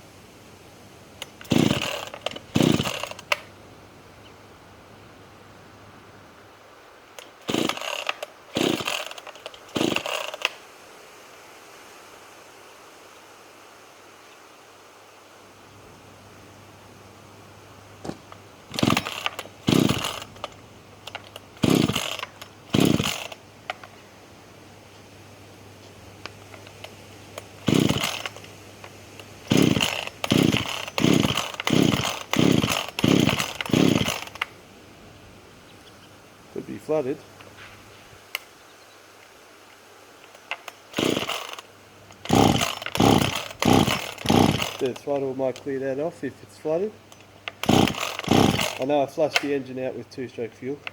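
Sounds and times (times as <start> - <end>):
chainsaw recoil starter cranking: 1.2 - 3.5, 7.1 - 10.6, 18.0 - 24.0, 26.3 - 34.6, 40.3 - 49.8.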